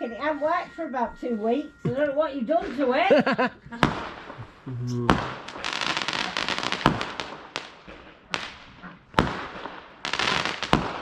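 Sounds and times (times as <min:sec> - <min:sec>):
fireworks bangs: 0:00.2 - 0:11.0
fireworks crackling: 0:02.5 - 0:11.0.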